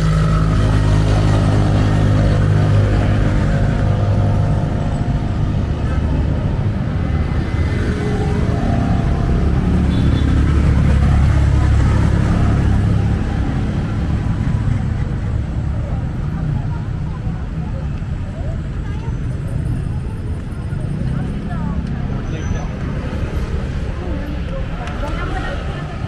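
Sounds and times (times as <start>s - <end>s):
vehicle engine running: 0.0s - 18.3s
city traffic noise: 0.0s - 26.0s.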